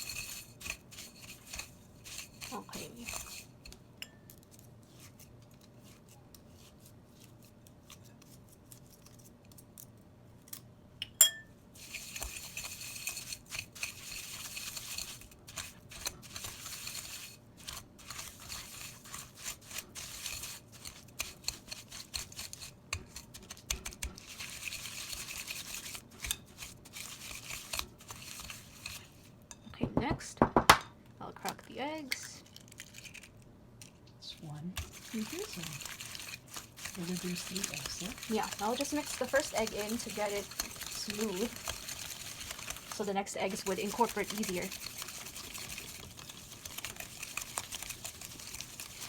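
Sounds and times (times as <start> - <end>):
utensil scraping a mixing bowl: 0.0 - 3.8, 4.8 - 8.7, 11.8 - 29.4, 34.8 - 49.0.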